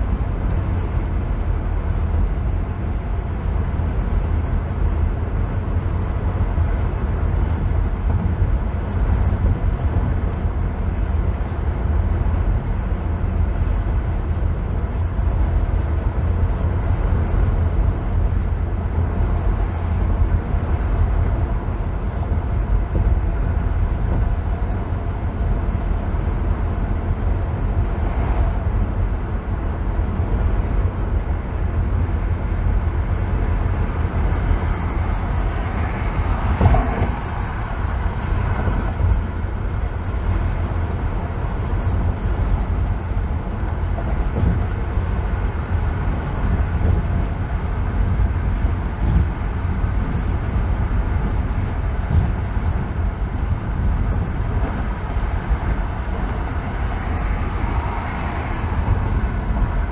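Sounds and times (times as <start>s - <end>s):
tyre and engine rumble: 0.0s - 59.9s
car bump: 36.1s - 37.5s.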